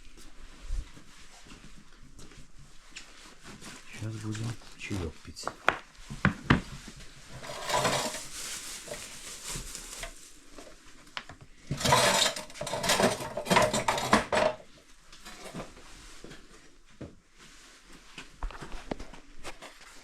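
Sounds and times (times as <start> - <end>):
dishes and cutlery clattering: 7.4 - 8.2, 11.7 - 14.7.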